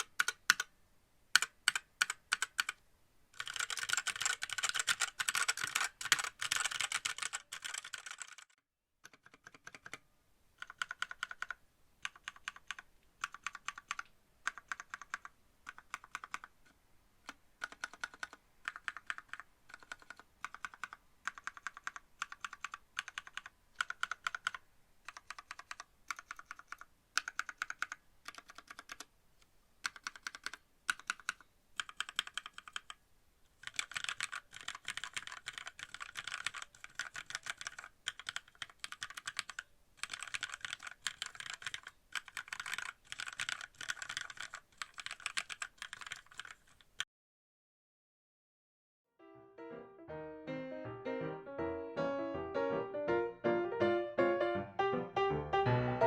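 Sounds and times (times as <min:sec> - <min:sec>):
mechanical keyboard typing: 0:00.0 - 0:00.7, 0:01.3 - 0:02.8, 0:03.4 - 0:10.0, 0:10.6 - 0:29.1, 0:29.8 - 0:33.0, 0:33.6 - 0:47.0.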